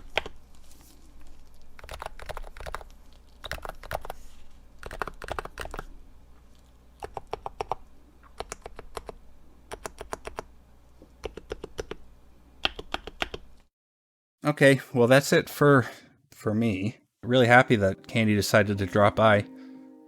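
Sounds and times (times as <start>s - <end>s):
keyboard typing: 1.8s - 4.2s, 4.8s - 5.9s, 7.0s - 10.5s, 11.2s - 12.0s.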